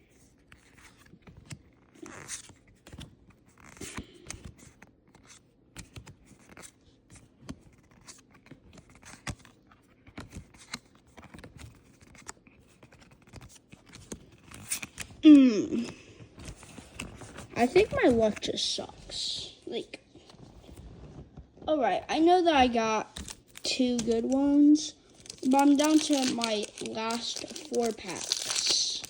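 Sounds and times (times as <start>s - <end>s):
trading cards rustling: 7.6s - 20.8s, 21.7s - 29.0s.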